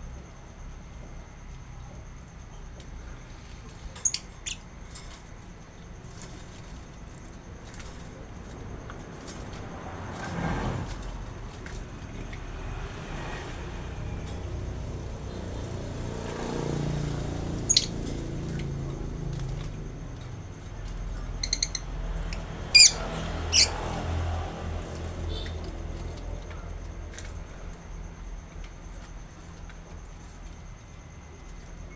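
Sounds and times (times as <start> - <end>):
traffic rumble: 0.0 - 31.9
birds chirping: 3.6 - 6.5, 13.4 - 26.5.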